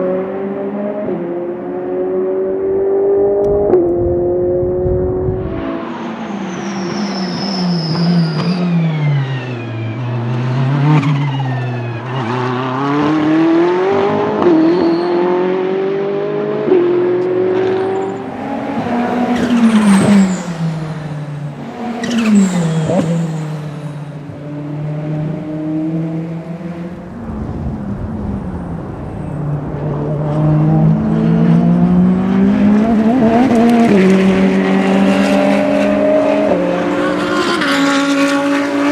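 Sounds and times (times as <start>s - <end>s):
racing engine accelerating: 0.0s - 38.9s
turbo whistle: 6.3s - 9.4s, 14.5s - 15.4s.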